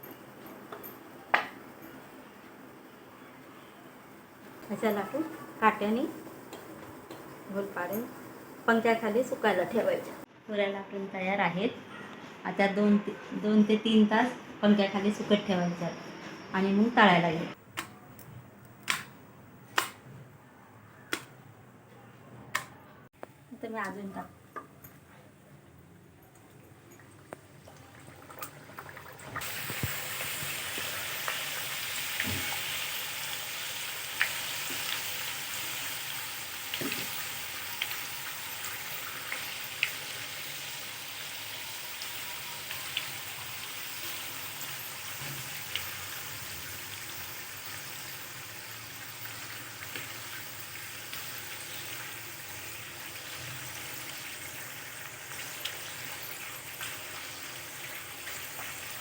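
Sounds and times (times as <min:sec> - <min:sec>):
deep-frying sizzle: 0:27.1 - 0:59.0
oil crackles and pops: 0:27.2 - 0:40.6.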